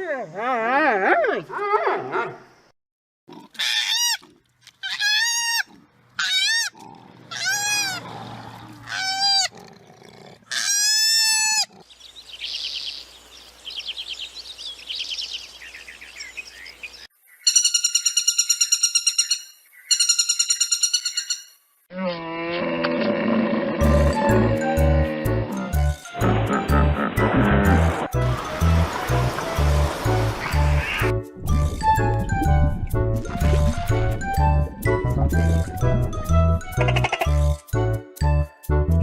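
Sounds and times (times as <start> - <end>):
animal calls rising and falling: 4.8 - 9.6.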